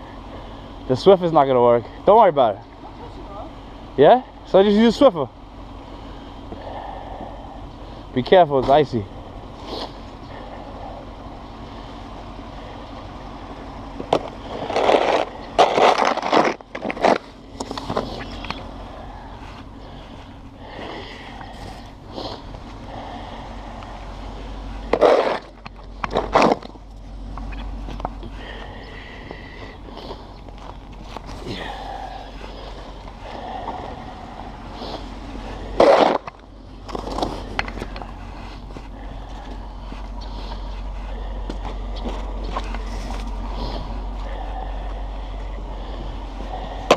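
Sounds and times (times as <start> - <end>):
steady low hum: 0.0 - 46.9
shovel scraping snow: 25.0 - 25.4.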